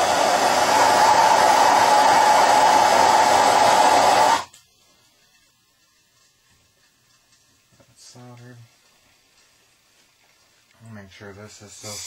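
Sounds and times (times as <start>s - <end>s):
torch flame hissing: 0.0s - 6.9s, 11.4s - 12.0s.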